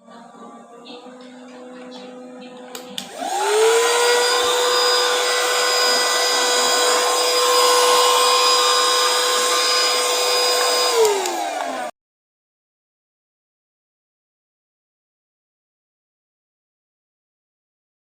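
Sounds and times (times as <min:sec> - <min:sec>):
handheld vacuum cleaner motor whine: 0:01.0 - 0:12.0.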